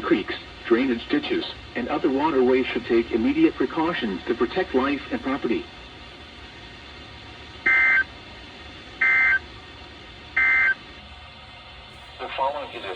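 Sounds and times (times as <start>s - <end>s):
two-tone digital warble bursts: 7.7s - 8.0s, 9.0s - 9.4s, 10.4s - 10.8s.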